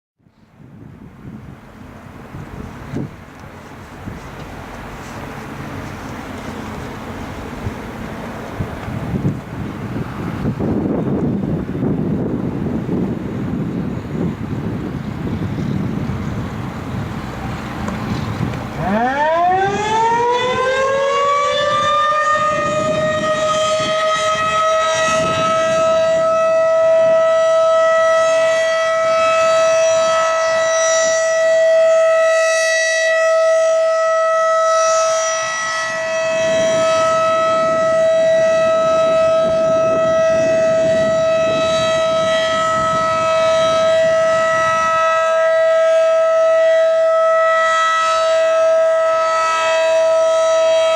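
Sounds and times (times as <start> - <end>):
warning siren winding up: 18.6 - 50.9.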